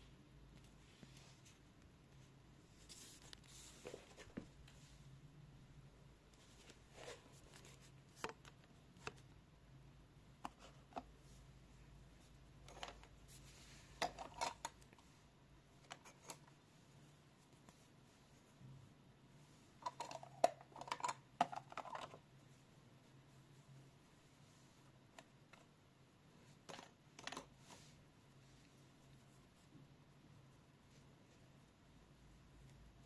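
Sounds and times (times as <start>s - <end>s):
soft clicks and rustles: 0.4s - 5.2s.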